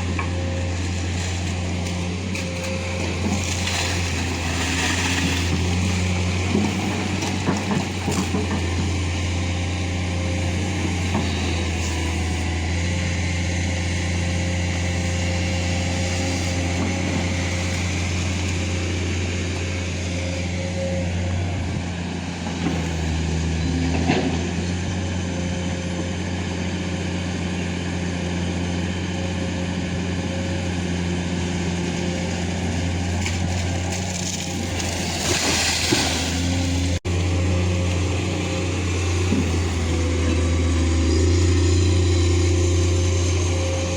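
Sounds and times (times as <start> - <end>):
diesel engine running: 0.0 - 43.9.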